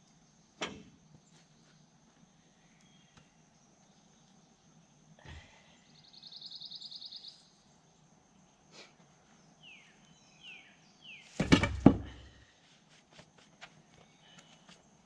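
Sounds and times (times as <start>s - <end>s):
loud thumps: 11.4s - 12.3s.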